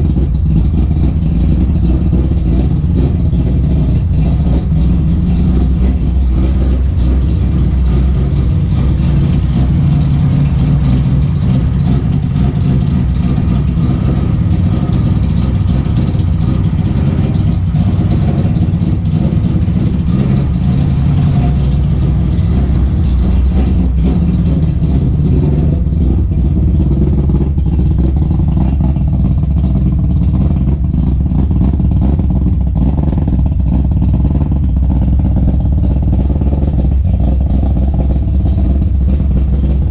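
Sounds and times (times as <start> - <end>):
rotary engine idling: 0.0 - 39.9.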